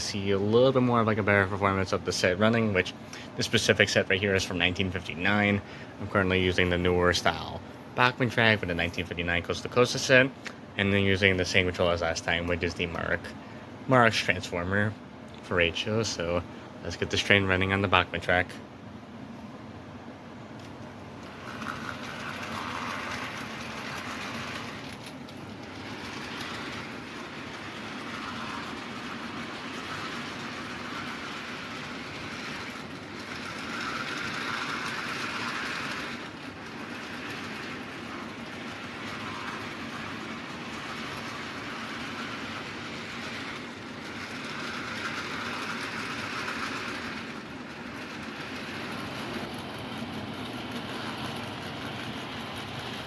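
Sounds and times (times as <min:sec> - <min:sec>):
model train motor whir: 0:20.6 - 0:53.0
model train wheel rattle: 0:20.6 - 0:53.0.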